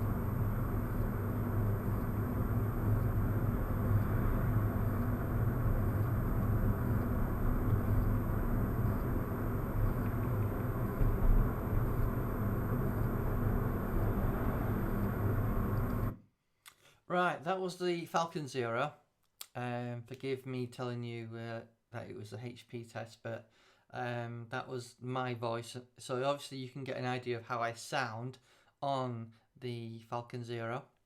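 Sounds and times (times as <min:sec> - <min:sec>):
engine and tyre rumble: 0:00.0 - 0:16.1
faint steady high whine: 0:00.0 - 0:16.2.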